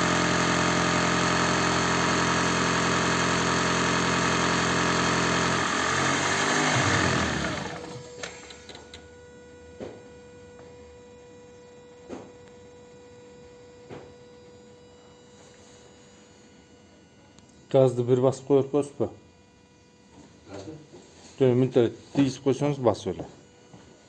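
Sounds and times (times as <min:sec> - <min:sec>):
car engine idling with rattle: 0:00.0 - 0:09.0.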